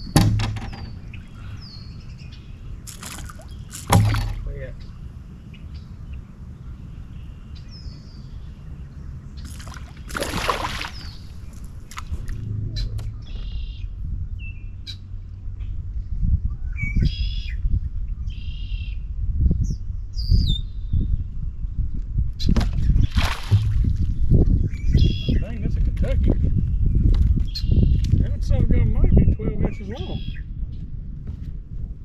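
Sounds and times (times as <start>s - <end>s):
birds chirping: 0.0s - 15.8s, 22.4s - 25.8s, 28.8s - 30.9s
steady low rumble: 0.0s - 32.0s
loud rushing whoosh: 11.2s - 14.4s.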